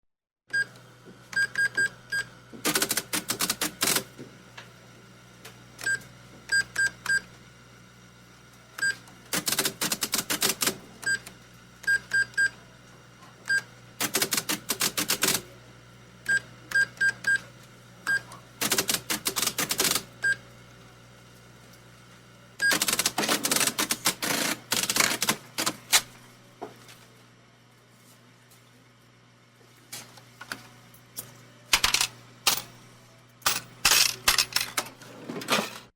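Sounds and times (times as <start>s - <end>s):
barcode scanner beeps: 1.4s - 2.3s.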